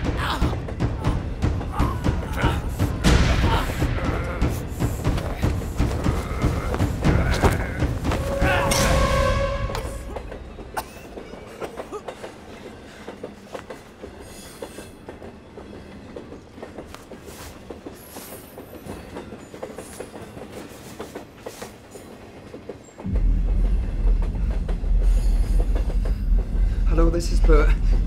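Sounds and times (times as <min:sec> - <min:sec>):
loud low rumble: 0:23.1 - 0:28.0.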